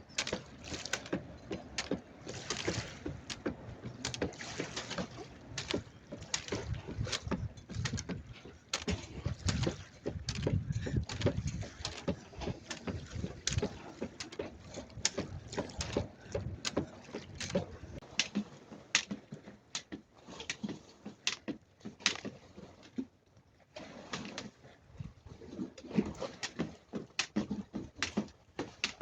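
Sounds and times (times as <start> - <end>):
jump rope slapping the floor: 0.1 - 19.1.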